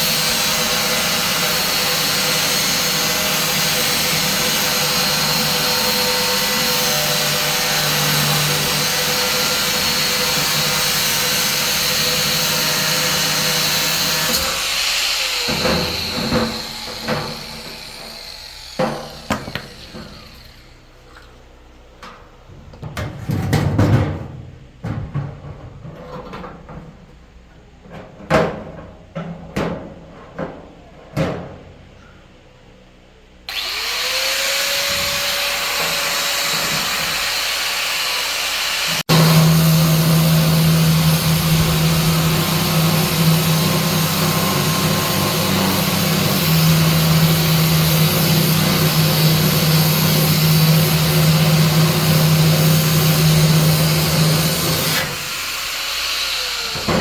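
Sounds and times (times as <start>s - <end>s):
electric power tool humming: 0.0s - 20.8s, 33.5s - 57.0s.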